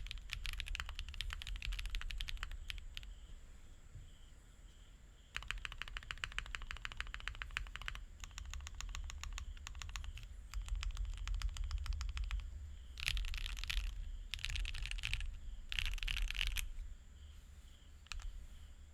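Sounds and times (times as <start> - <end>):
mechanical keyboard typing: 0.0 - 3.1, 5.4 - 16.8, 18.1 - 18.3.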